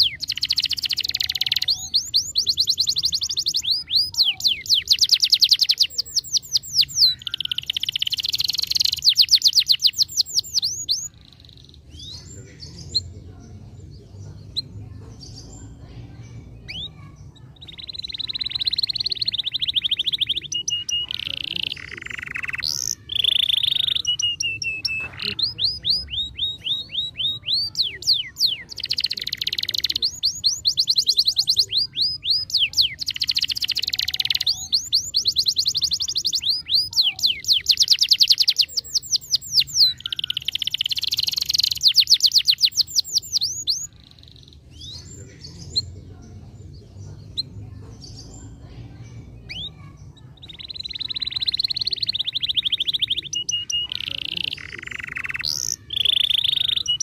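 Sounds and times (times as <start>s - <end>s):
canary singing trills: 0.0s - 57.0s.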